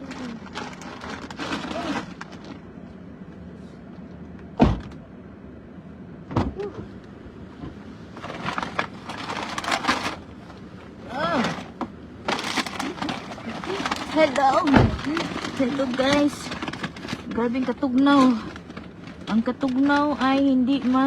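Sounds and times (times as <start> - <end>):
loud deep thump: 4.6 - 5.0
rustling and clicking: 11.4 - 21.0.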